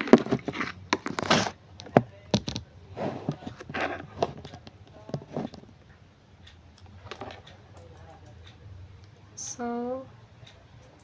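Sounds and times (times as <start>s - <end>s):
clicks and rustling of test probes: 3.2s - 5.8s, 6.8s - 8.1s.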